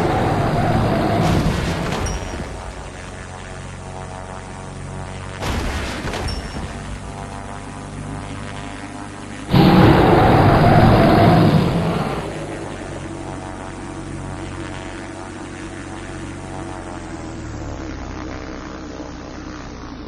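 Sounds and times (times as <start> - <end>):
sudden boom: 0.0 - 3.0, 9.5 - 13.8
loud rumbling noise: 0.0 - 3.4, 9.5 - 14.8
steady hum: 0.0 - 20.0.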